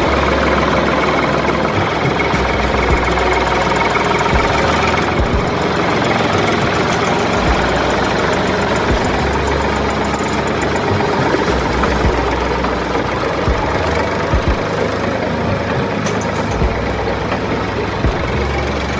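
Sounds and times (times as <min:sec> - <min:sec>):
low thuds: 0:00.0 - 0:18.6
motor running: 0:00.0 - 0:18.9.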